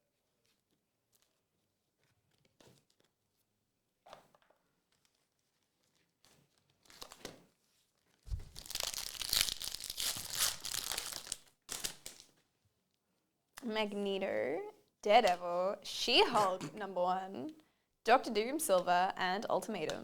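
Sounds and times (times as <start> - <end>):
foil wrapper tearing and crinkling: 5.0 - 7.4, 8.1 - 12.3
cards rustling: 8.3 - 12.2.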